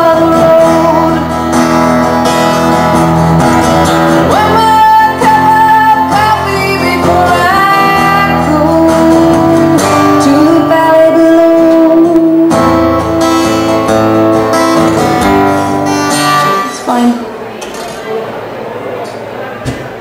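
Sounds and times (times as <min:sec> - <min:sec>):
person singing long notes: 0:00.0 - 0:01.4, 0:04.2 - 0:12.8
strummed acoustic guitar: 0:00.0 - 0:17.2.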